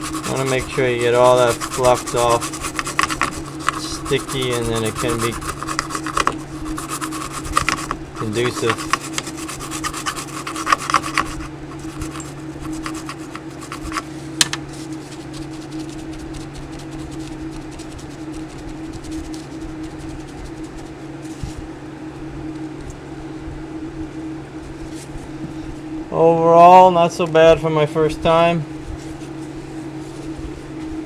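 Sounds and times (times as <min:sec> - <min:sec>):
scrubbing on a circuit board: 0:00.0 - 0:21.0
steady low hum: 0:00.0 - 0:31.0.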